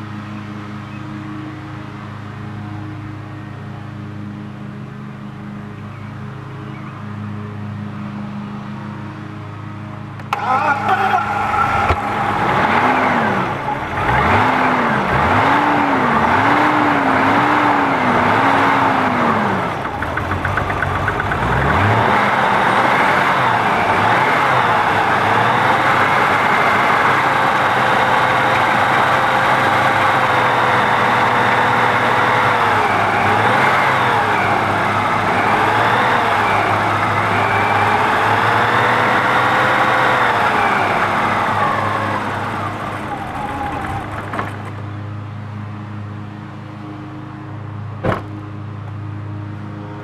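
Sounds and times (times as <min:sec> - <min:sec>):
car engine running unevenly: 0:10.2 - 0:45.2.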